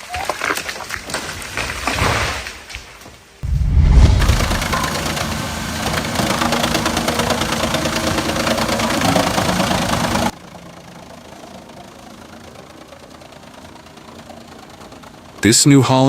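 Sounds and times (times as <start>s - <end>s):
heavy machine engine running: 3.4s - 15.9s.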